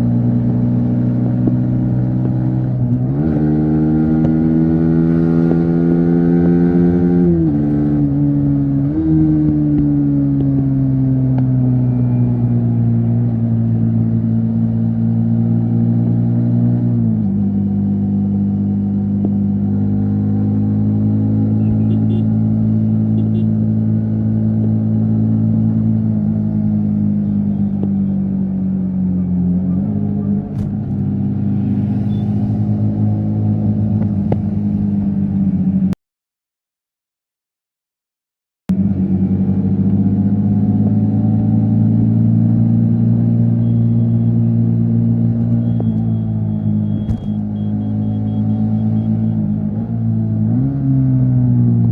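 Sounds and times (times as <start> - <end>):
motorcycle engine running: 19.0 - 24.7.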